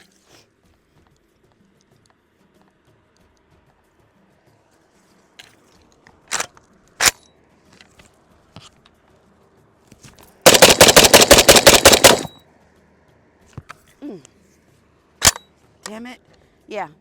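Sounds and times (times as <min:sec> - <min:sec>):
rapid gunshots: 0:10.5 - 0:12.4.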